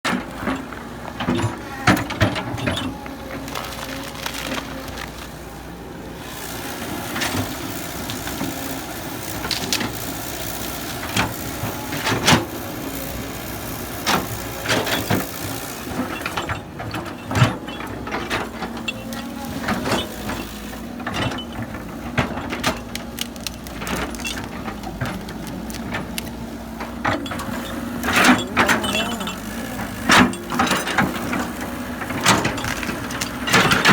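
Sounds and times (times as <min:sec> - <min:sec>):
excavator diesel engine running: 0:00.0 - 0:33.9
earth and rock crunching: 0:21.2 - 0:33.9.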